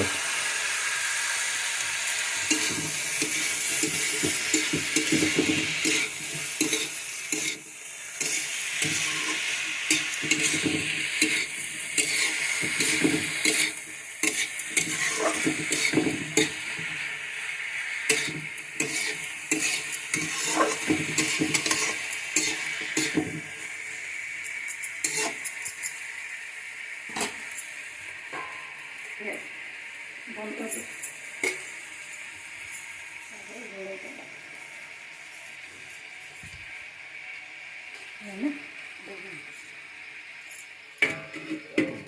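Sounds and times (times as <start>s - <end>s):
frying sizzle: 0.0s - 42.0s
spatula scraping a pan: 2.4s - 17.1s, 17.8s - 23.6s, 25.0s - 25.6s.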